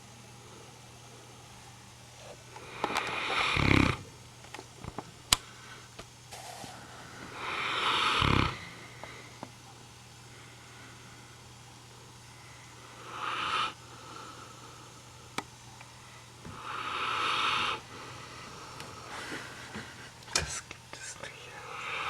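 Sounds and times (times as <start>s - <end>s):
dog snoring: 2.6s - 4.1s, 7.3s - 8.8s, 12.9s - 14.4s, 16.5s - 18.0s, 21.6s - 22.0s.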